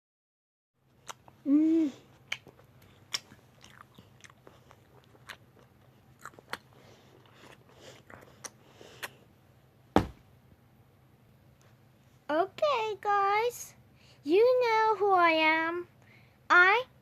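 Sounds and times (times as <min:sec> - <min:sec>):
low steady hum: 0:00.8 - 0:17.0
crunchy chewing: 0:02.1 - 0:09.2.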